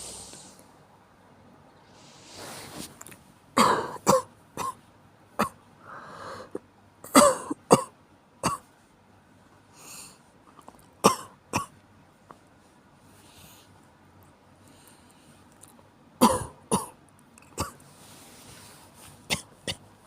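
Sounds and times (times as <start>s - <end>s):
breath drawn in: 0.0s - 0.6s, 2.0s - 2.9s
person coughing: 3.6s - 4.8s, 6.5s - 7.9s, 11.0s - 11.7s, 16.2s - 17.8s.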